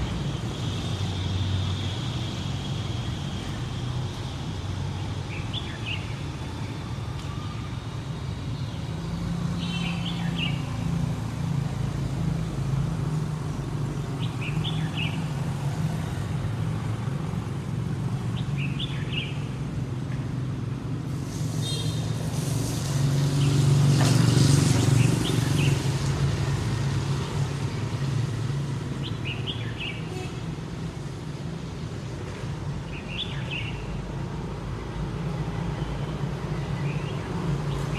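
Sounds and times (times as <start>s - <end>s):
traffic rumble: 0.0s - 37.9s.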